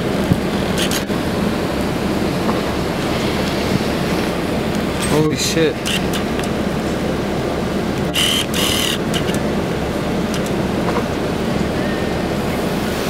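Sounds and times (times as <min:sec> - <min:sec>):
hurricane wind rushing: 0:00.0 - 0:08.2.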